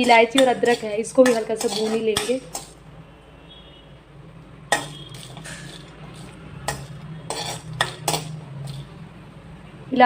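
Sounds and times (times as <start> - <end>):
spoon scraping and clinking pan: 0.0 - 2.8, 4.7 - 8.9.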